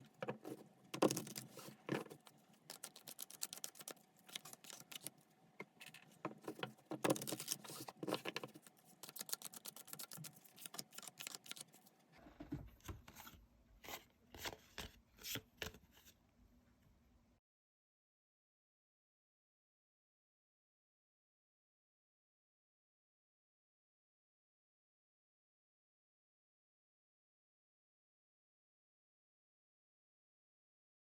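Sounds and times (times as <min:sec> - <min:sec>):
cards being shuffled: 0:00.4 - 0:05.2, 0:05.8 - 0:11.9.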